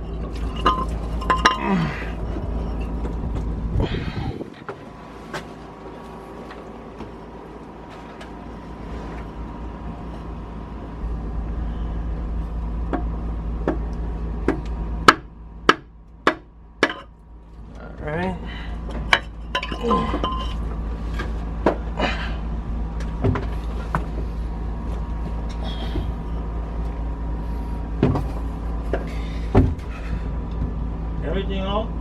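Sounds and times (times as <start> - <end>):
steady low rumble: 0.0 - 32.0
metal-on-metal knocks: 14.4 - 17.1.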